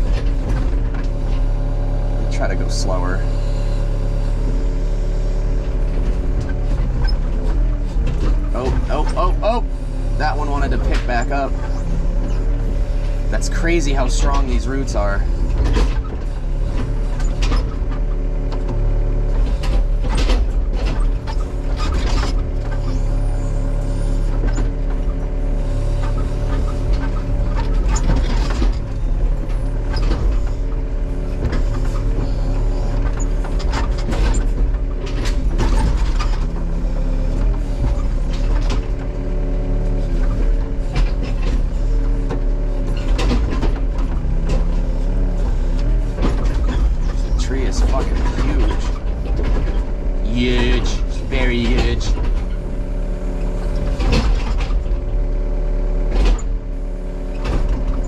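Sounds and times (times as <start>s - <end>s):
excavator diesel engine under load: 0.0s - 58.0s.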